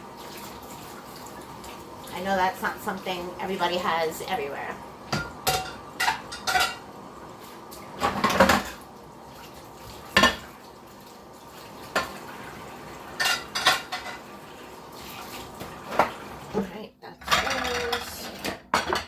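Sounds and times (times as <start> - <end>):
dishes and silverware clinking: 5.1 - 6.8, 13.2 - 14.2, 17.2 - 19.0.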